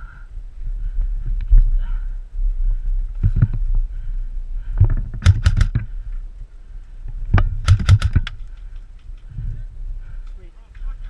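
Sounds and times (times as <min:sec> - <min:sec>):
airsoft gun shots: 0:05.2 - 0:05.8, 0:07.6 - 0:08.4.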